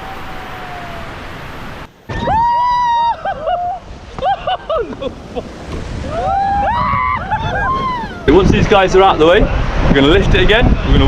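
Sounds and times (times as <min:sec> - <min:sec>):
rushing whitewater: 0:00.0 - 0:11.0
laughter: 0:03.1 - 0:05.6.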